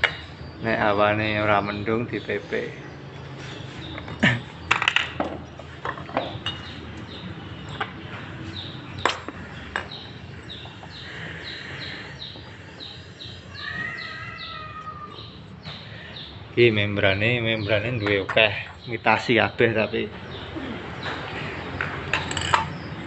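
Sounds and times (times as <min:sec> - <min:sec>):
hard objects clicking and knocking: 0:04.0 - 0:06.7, 0:21.8 - 0:22.9
small bird chirping: 0:06.4 - 0:16.4.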